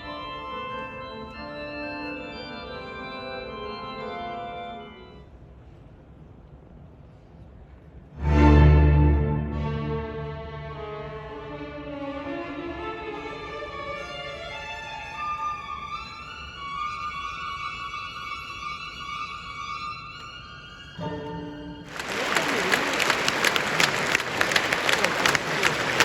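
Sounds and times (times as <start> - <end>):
pipe organ chords: 0.0 - 5.2.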